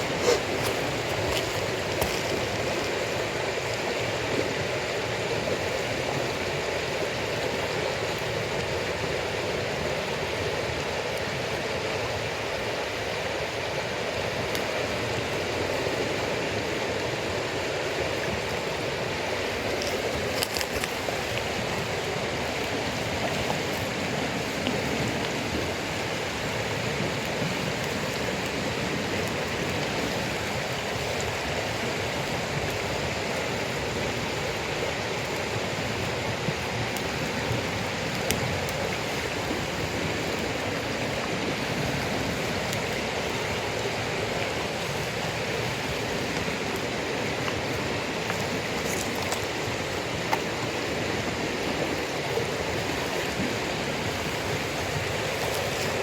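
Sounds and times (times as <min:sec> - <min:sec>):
burning wood crackling pops: 0:00.0 - 0:04.3, 0:18.1 - 0:51.2
campfire rushing noise: 0:00.0 - 0:56.0.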